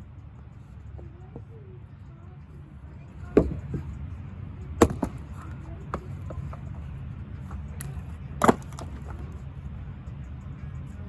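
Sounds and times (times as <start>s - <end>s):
light wooden knocks: 3.2s - 4.0s, 4.8s - 9.4s
axe strikes chopping wood: 4.8s - 6.8s, 7.8s - 9.2s.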